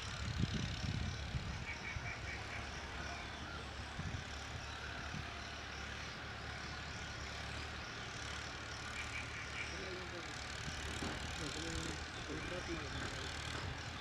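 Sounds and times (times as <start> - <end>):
low outdoor rumble: 0.0 - 14.0.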